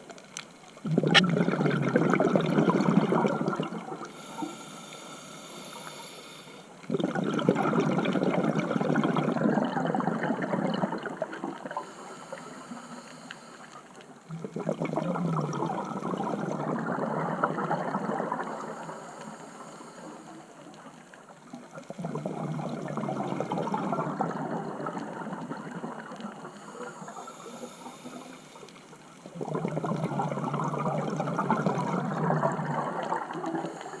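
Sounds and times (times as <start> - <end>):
exhaled bubbles underwater: 0.0 - 4.6, 6.8 - 12.7, 13.8 - 34.0
regulator inhale hiss: 4.0 - 6.9, 11.6 - 14.2, 18.4 - 20.9, 26.3 - 29.3, 33.1 - 34.0.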